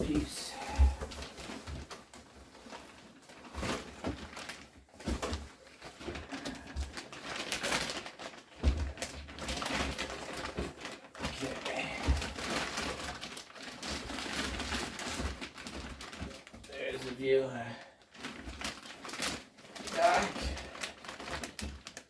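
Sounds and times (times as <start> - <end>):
packaging rustling and scraping: 0.0 - 22.0.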